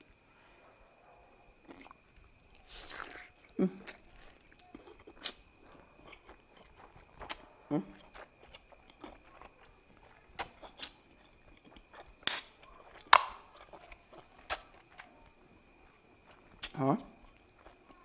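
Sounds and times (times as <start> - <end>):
person chewing: 1.2 - 18.0
wet mouth smacks and crunches: 1.7 - 5.4, 6.0 - 15.1.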